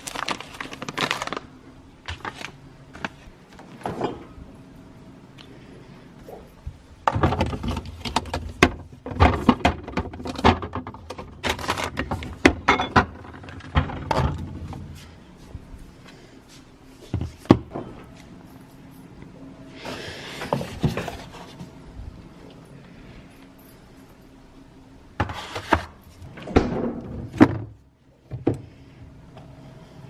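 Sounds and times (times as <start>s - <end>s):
dishes and utensils clattering: 12.4s - 14.3s.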